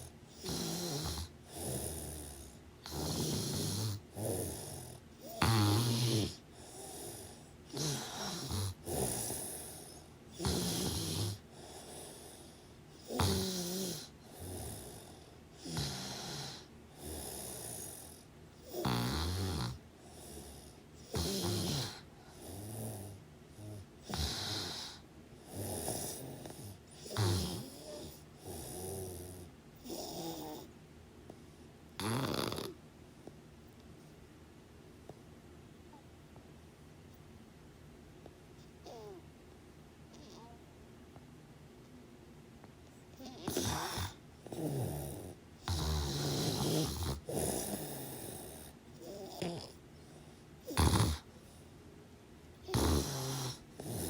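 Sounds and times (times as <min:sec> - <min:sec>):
rasping snores: 0:00.0 - 0:30.7, 0:32.0 - 0:32.8, 0:43.2 - 0:49.8, 0:50.6 - 0:51.3, 0:52.6 - 0:54.0.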